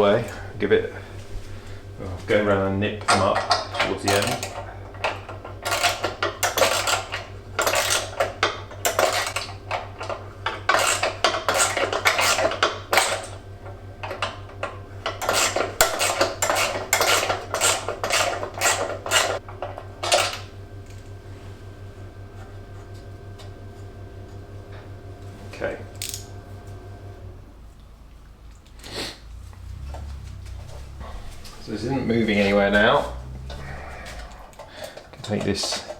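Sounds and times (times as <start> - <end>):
metal tools clinking: 3.0 - 13.4, 29.3 - 35.9.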